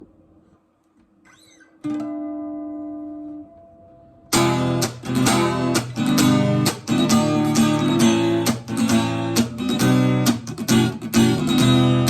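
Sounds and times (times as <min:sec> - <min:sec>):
acoustic guitar note plucked: 0:01.5 - 0:12.0
acoustic guitar chords strummed: 0:01.9 - 0:12.0.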